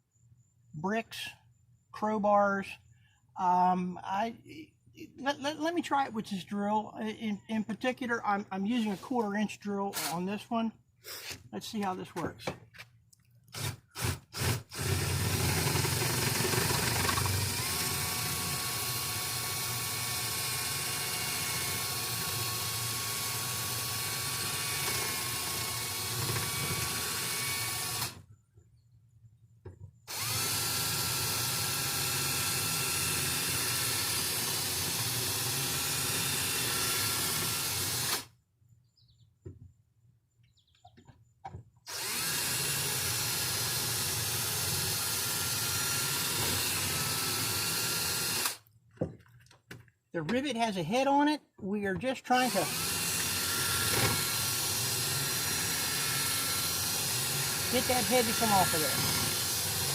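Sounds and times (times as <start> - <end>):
electric drill whining: 13.5 - 28.2, 30.1 - 38.3, 41.9 - 48.6, 52.4 - 59.9.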